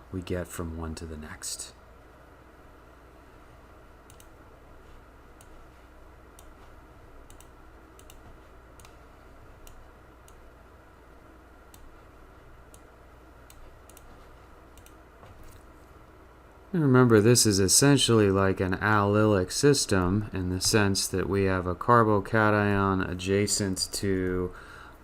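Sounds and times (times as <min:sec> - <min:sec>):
steady low hum: 0:00.0 - 0:25.0
faint light clicks: 0:04.1 - 0:04.4, 0:07.3 - 0:08.2, 0:14.7 - 0:15.7.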